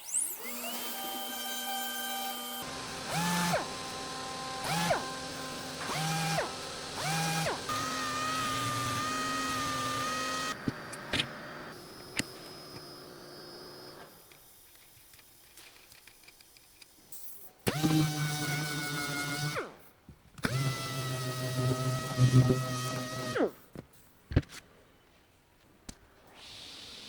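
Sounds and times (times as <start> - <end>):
router motors whining: 0.0 - 14.4, 17.7 - 19.7, 20.4 - 23.5.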